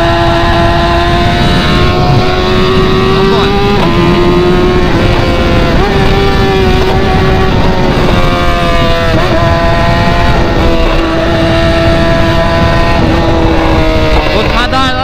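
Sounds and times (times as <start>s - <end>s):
motorcycle exhaust at high revs: 0.0s - 15.0s
wind rush on microphone: 0.0s - 15.0s.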